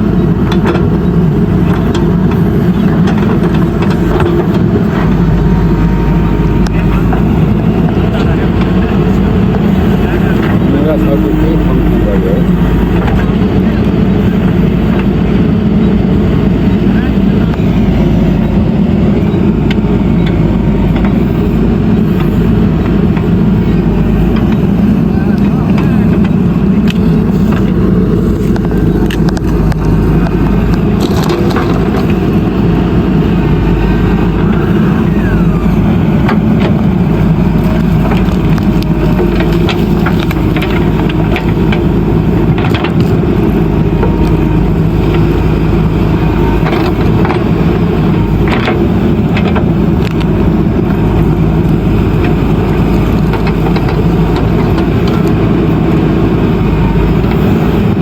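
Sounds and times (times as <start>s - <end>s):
diesel engine running under load: 0.0s - 58.0s
sharp knocks of earth and stones: 28.4s - 32.3s.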